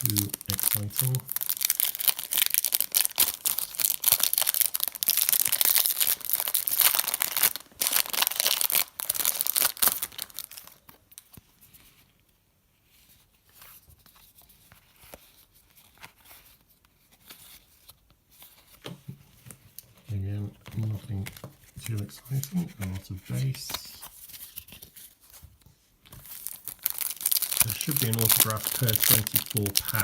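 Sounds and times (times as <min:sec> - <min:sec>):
foil wrapper tearing and crinkling: 0:00.0 - 0:10.8, 0:26.2 - 0:30.0
cards rustling and clicking: 0:13.6 - 0:30.0.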